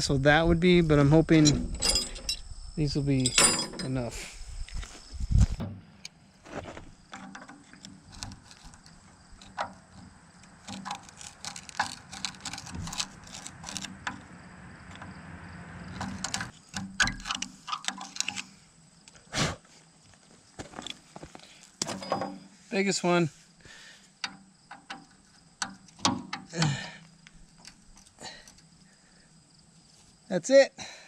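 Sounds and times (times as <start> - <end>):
metallic clicks of hand tools: 16.0 - 18.5.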